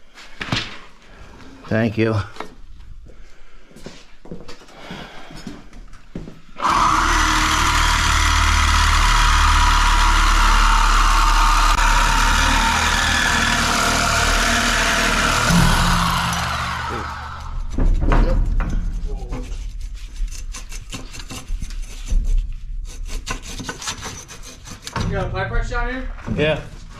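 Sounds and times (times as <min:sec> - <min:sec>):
power saw cutting pipe: 0:06.6 - 0:17.8.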